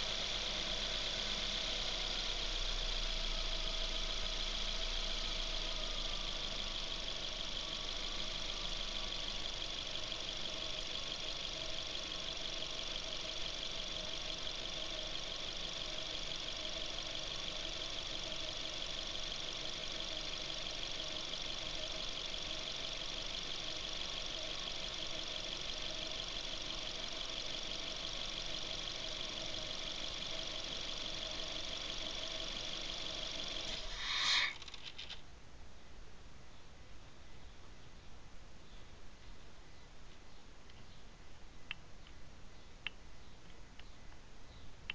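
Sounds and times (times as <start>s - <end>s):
car engine idling: 0.0s - 35.0s.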